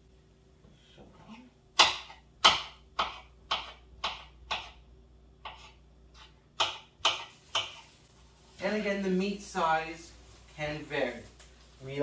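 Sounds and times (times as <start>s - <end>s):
knife chopping meat on board: 1.8s - 4.8s, 5.4s - 7.8s.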